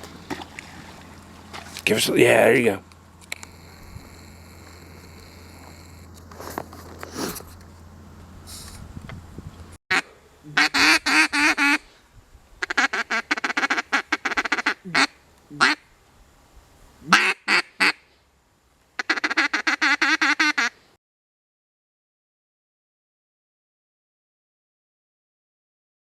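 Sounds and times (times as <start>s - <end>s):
duck quacking: 9.9s - 11.8s, 12.6s - 15.8s, 17.0s - 18.0s, 19.0s - 20.8s.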